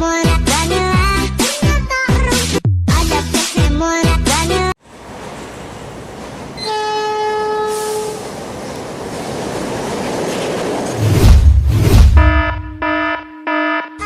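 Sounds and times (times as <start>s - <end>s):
passing train rushing: 4.8s - 12.4s
train horn: 6.6s - 8.3s.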